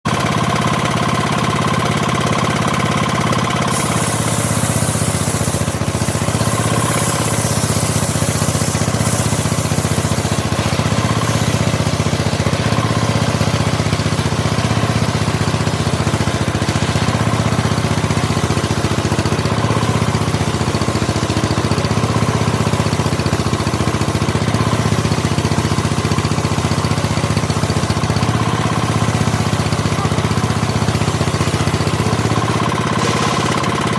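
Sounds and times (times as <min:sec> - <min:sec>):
sawmill machinery drone: 0:00.1 - 0:33.9
high hiss: 0:03.7 - 0:12.2.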